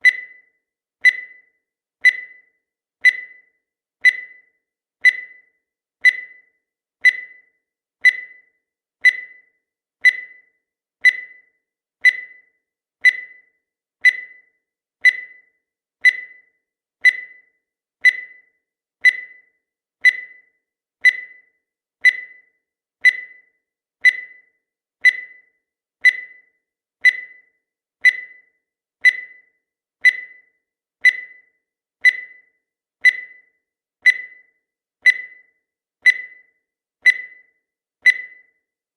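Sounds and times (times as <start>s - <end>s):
short electronic beeps: 0.0s - 38.6s.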